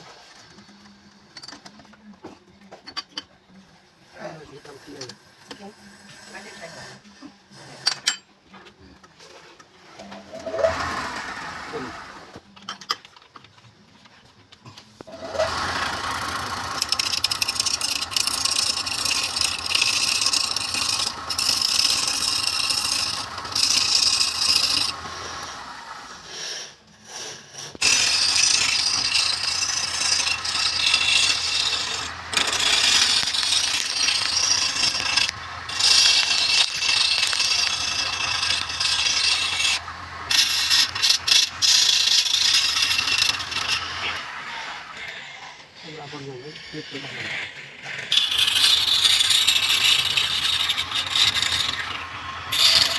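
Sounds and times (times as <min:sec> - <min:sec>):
tool scraping spinning wood: 0:04.1 - 0:08.2, 0:09.2 - 0:12.5, 0:15.0 - 0:52.9
wood lathe running: 0:10.0 - 0:12.4, 0:15.0 - 0:26.5, 0:27.7 - 0:52.9.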